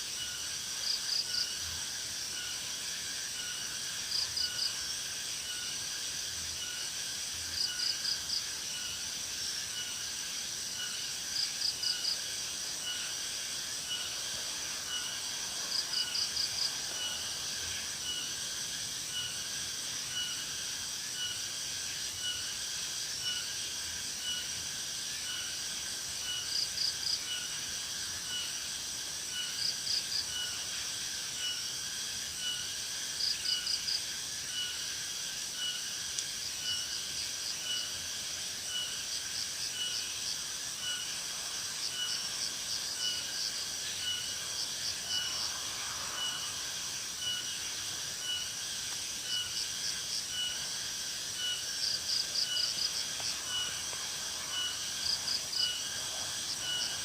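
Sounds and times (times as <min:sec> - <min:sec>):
insects chirring: 0:00.0 - 0:57.0.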